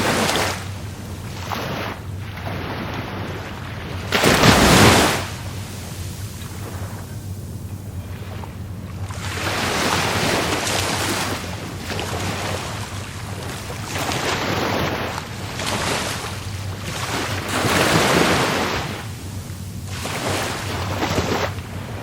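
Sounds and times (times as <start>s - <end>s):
low rumble of sea: 0.0s - 22.0s
waves breaking on shore: 0.0s - 22.0s.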